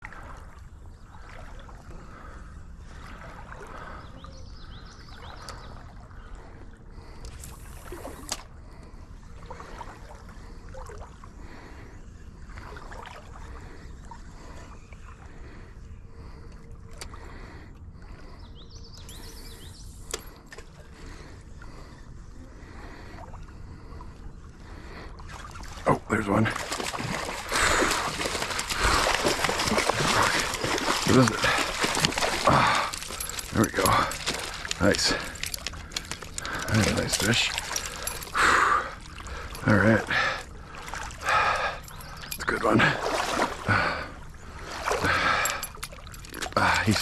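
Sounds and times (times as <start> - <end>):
stream flowing: 25.2 - 47.0.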